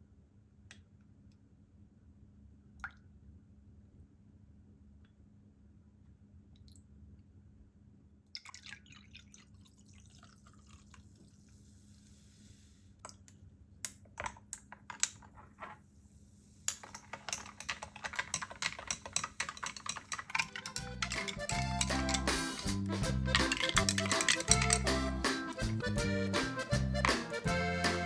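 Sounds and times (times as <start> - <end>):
soda fizzing in a glass: 8.4 - 12.7
glass clinks: 18.1 - 25.2.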